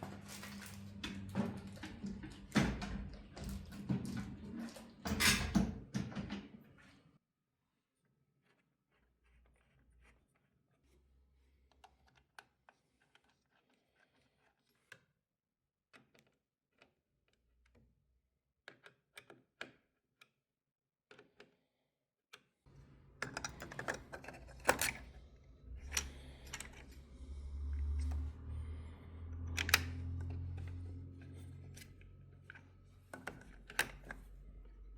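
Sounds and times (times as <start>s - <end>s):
computer parts clicking and clattering: 22.8s - 27.1s.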